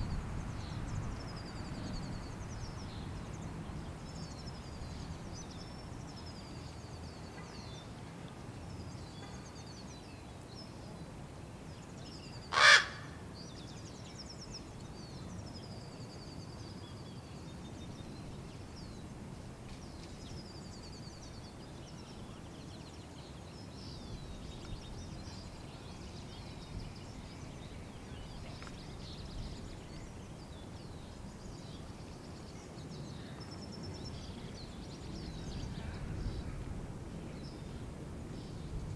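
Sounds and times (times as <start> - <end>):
raven call: 12.5 - 13.2.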